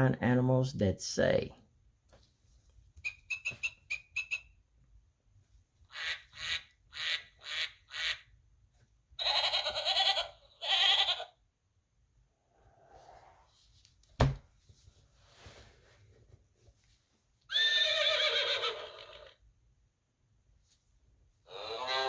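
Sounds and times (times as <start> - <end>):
high bird chirps: 3.0 - 4.5
animal bleats: 21.5 - 22.0.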